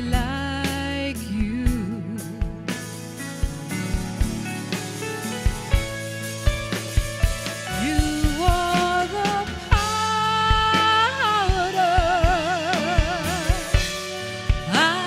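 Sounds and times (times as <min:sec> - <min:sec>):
keyboard chords: 0:01.5 - 0:15.0
drum hits: 0:01.7 - 0:15.0
person singing with vibrato: 0:07.7 - 0:15.0.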